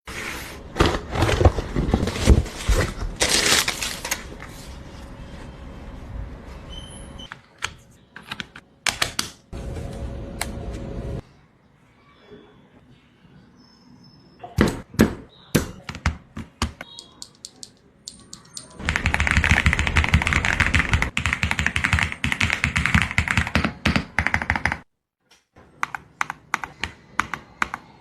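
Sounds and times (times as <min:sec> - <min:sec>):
packaging rustling: 0:00.8 - 0:04.6.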